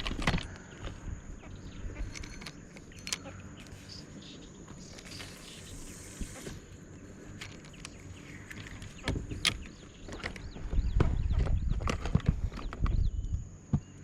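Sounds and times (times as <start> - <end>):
insects droning: 0.0 - 14.0
scattered clicks: 1.9 - 4.2, 7.2 - 10.6
bright high hiss: 5.1 - 6.8.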